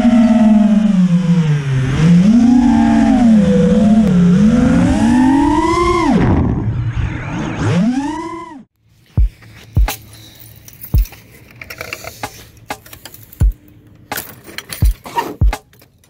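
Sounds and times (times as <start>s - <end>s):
drone motors whining: 0.0s - 9.9s.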